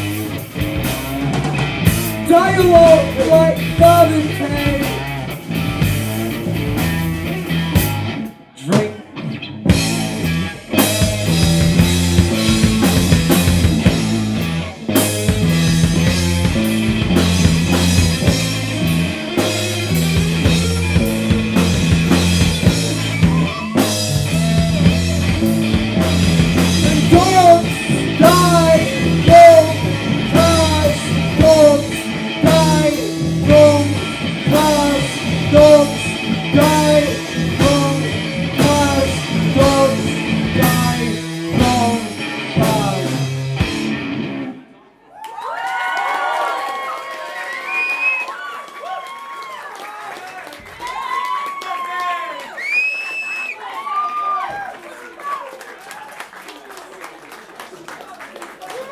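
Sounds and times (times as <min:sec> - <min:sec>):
rock band playing: 0:00.0 - 0:44.9.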